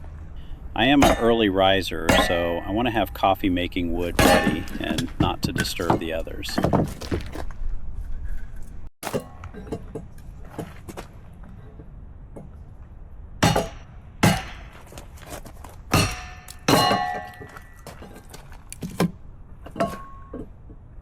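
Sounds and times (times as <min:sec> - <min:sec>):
axe striking firewood: 0:01.0 - 0:01.4, 0:04.2 - 0:05.3, 0:13.4 - 0:17.8.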